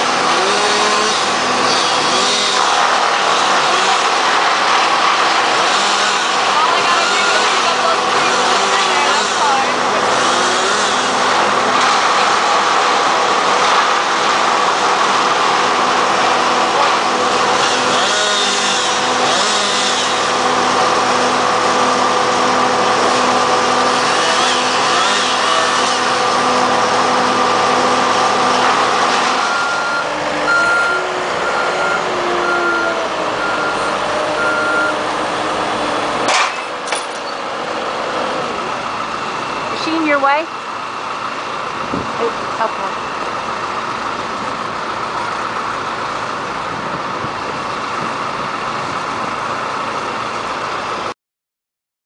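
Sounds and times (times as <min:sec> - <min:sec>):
heavy machine engine running: 0:00.0 - 0:51.1
reversing alarm beeping: 0:06.8 - 0:07.8, 0:29.4 - 0:35.0.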